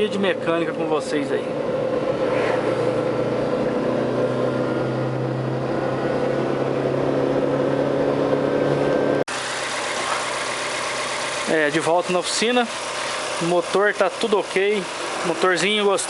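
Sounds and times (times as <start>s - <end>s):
car engine drone inside cabin: 0.0s - 11.5s
road noise: 0.0s - 16.0s.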